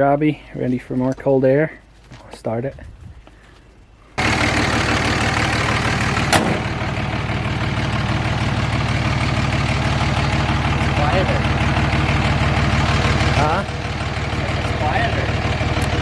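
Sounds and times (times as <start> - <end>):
diesel engine starting and idling: 4.1 - 16.0.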